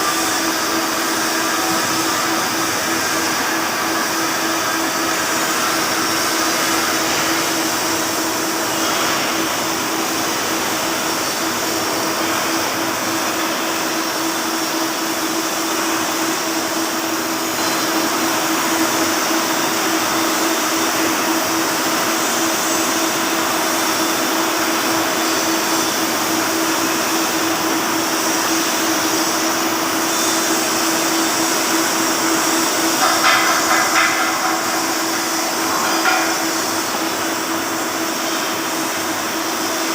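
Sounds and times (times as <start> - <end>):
welding arc hiss: 0.0 - 39.9
constant hum: 31.6 - 38.4.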